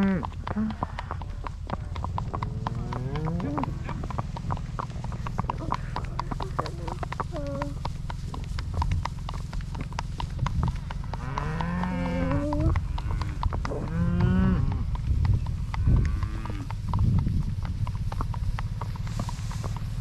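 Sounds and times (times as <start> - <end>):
cattle mooing: 0.0 - 1.1, 1.8 - 4.0, 5.4 - 7.8, 11.1 - 14.8, 15.8 - 16.7
horses' hooves walking: 0.0 - 20.0.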